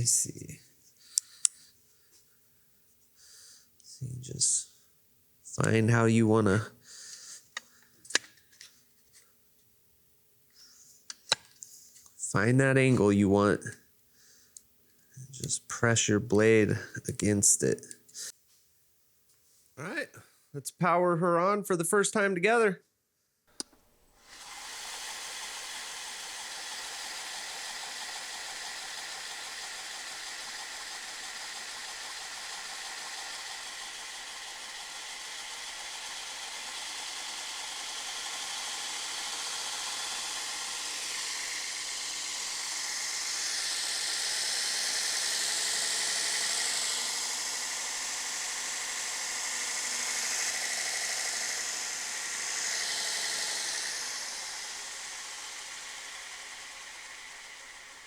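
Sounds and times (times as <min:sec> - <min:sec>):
belt grinder whirring: 0:23.5 - 0:58.0.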